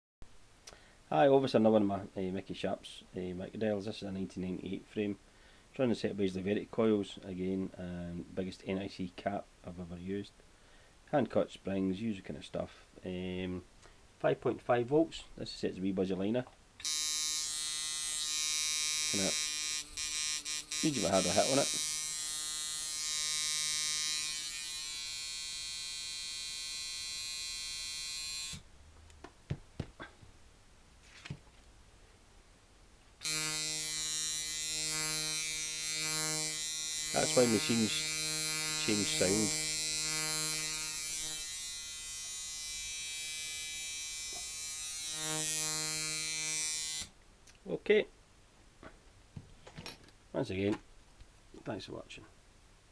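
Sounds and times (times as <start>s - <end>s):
tattoo machine buzzing: 16.8s - 28.6s, 33.2s - 47.1s.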